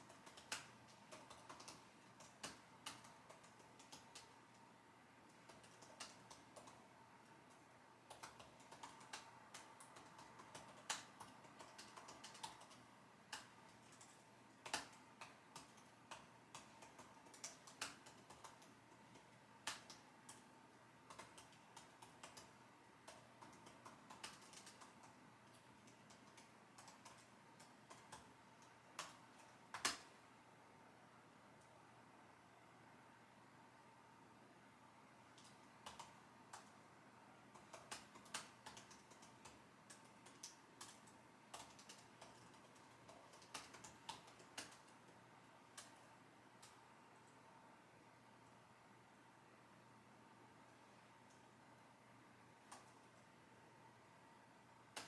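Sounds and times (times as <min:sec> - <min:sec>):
typing on computer keyboard: 0:00.0 - 0:30.2, 0:35.3 - 0:36.8, 0:37.4 - 0:47.4, 0:52.6 - 0:53.3.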